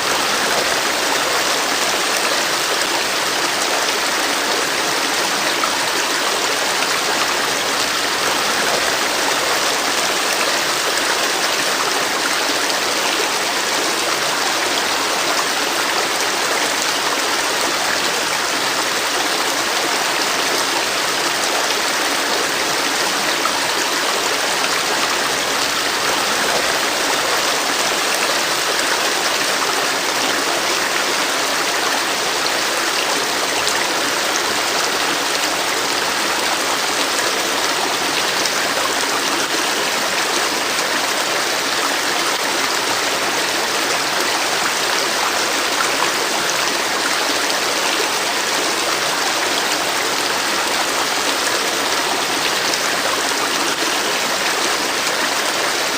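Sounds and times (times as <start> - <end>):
water running over rocks: 0.0 - 55.9.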